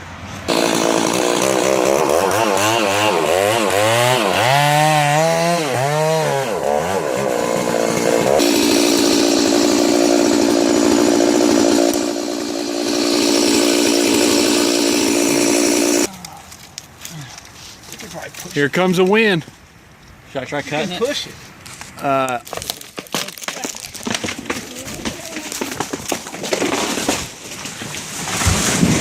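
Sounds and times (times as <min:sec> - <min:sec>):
chainsaw revving: 0:00.5 - 0:16.1.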